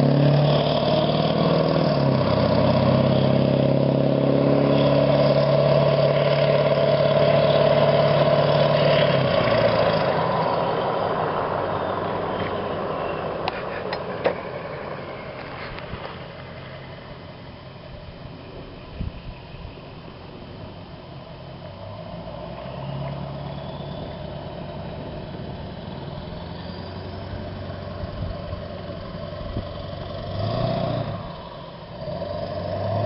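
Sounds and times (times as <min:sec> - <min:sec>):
diesel truck engine running: 0:00.0 - 0:33.0.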